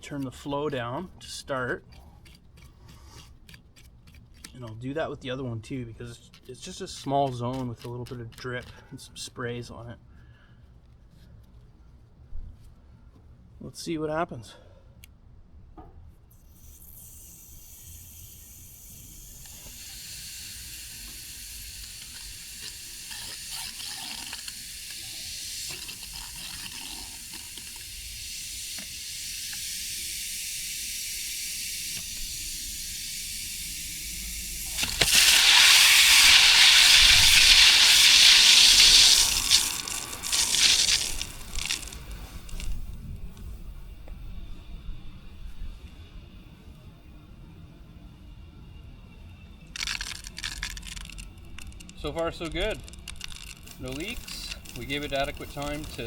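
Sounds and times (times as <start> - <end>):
water and air hissing through valve: 16.3 - 43.7, 49.8 - 56.0.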